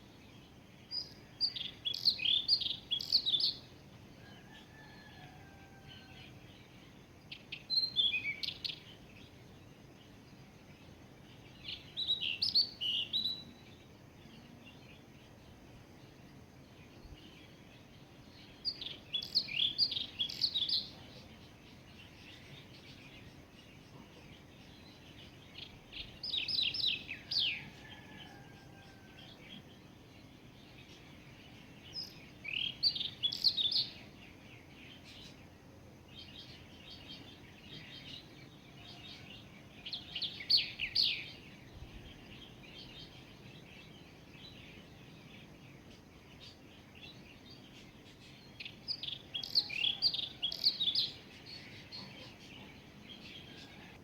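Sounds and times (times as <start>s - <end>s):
faint background hiss: 0.0s - 54.0s
songbird chirping: 0.0s - 54.0s.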